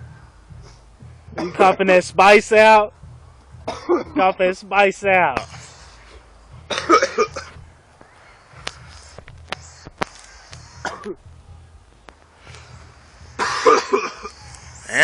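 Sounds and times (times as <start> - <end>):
man coughing and clearing throat: 1.4 - 1.8, 3.7 - 4.3, 6.7 - 7.6, 10.8 - 11.2, 13.4 - 14.3.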